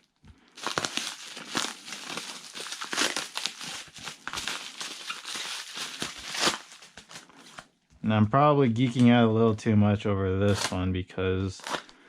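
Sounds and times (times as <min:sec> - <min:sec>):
packaging crinkling and rustling: 0:00.0 - 0:07.8
scissors cutting packaging: 0:00.6 - 0:07.6, 0:10.4 - 0:10.8, 0:11.6 - 0:11.9.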